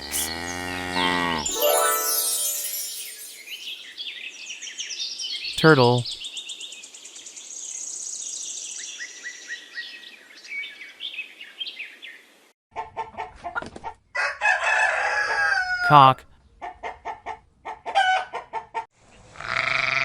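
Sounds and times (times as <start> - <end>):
rooster crowing: 14.2 - 15.8.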